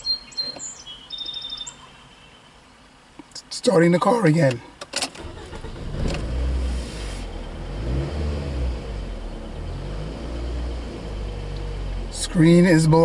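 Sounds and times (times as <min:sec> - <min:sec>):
car engine revving and idling: 0:05.2 - 0:13.0.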